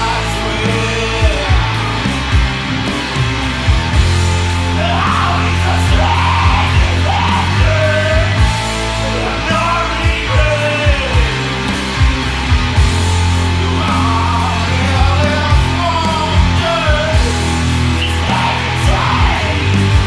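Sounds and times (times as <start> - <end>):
rock band playing: 0.0 - 20.0.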